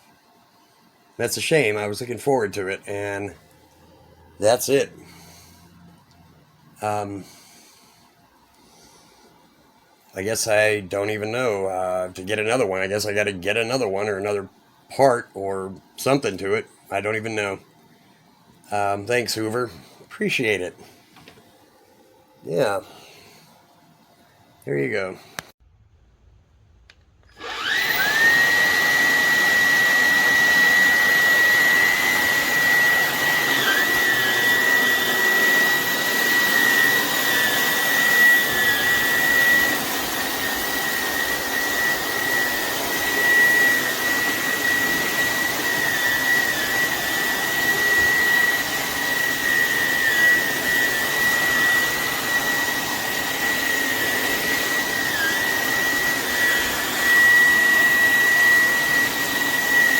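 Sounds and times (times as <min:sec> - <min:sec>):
vacuum cleaner motor whine: 0:27.2 - 0:59.9.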